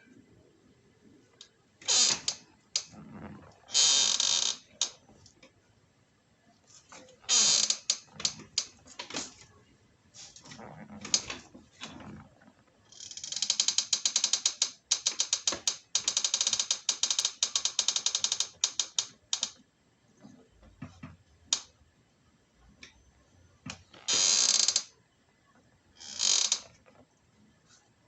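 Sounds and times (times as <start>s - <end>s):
chair creaking: 1.8s - 5.5s, 6.7s - 9.6s, 10.2s - 19.6s, 23.7s - 24.9s, 26.0s - 27.1s
chair mechanism clicking: 1.8s - 5.5s, 7.0s - 9.4s, 10.2s - 19.6s, 23.7s - 24.9s, 26.0s - 27.0s.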